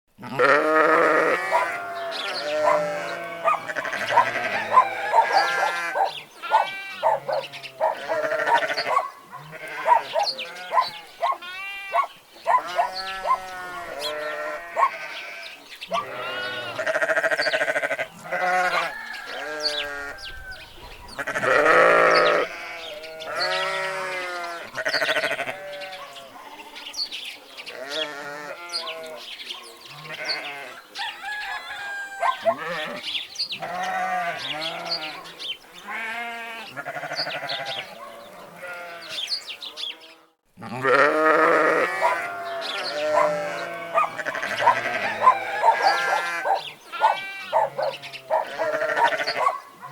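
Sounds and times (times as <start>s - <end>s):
sheep or goats bleating: 0.2s - 20.2s, 21.2s - 27.0s, 27.7s - 29.2s, 29.9s - 30.8s, 31.8s - 35.2s, 35.8s - 39.3s, 40.0s - 49.5s.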